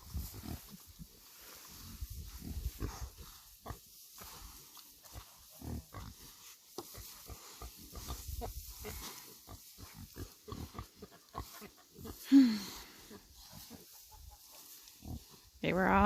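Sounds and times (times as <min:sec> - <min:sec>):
snuffling and rustling: 0:00.0 - 0:16.0
pigs grunting: 0:05.1 - 0:06.3, 0:06.9 - 0:14.0.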